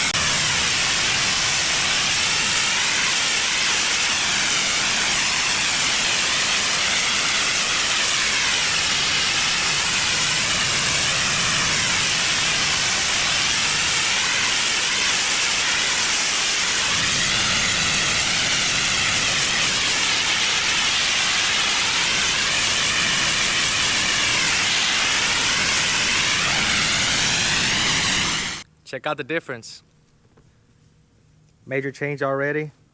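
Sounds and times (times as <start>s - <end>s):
pressure washer spraying pavement: 0.0s - 28.6s.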